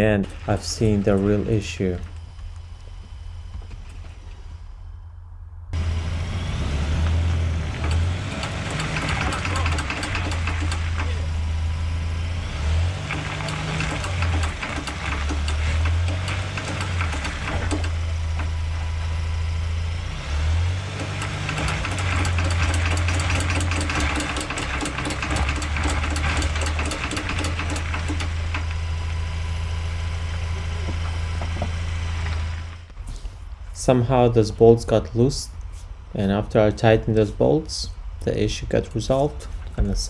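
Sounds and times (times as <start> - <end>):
engine hum: 0.0 - 40.0
rhythmic clicking knock underneath: 7.9 - 11.1, 21.0 - 28.7.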